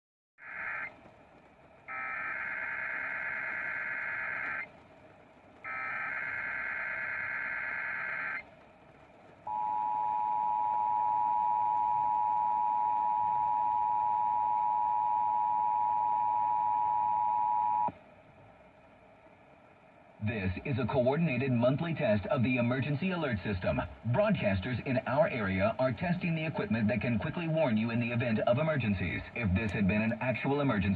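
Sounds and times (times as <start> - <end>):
digital data bursts: 1.9 - 4.7, 5.7 - 8.4
two-tone attention signal: 9.5 - 17.9.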